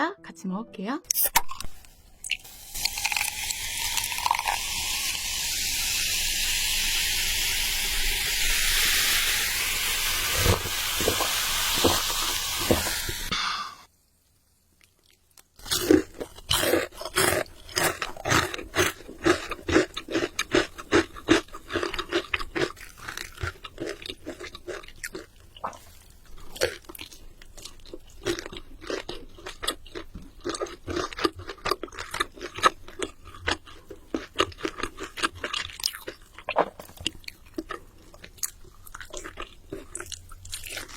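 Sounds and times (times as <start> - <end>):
steady hiss: 1.8 - 14.7
crunching fried chicken: 14.8 - 40.9.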